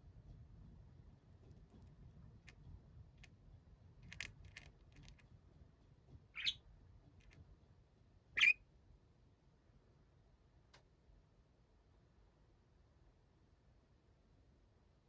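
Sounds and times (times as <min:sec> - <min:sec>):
budgerigar chirps: 0:06.4 - 0:06.6, 0:08.4 - 0:08.6.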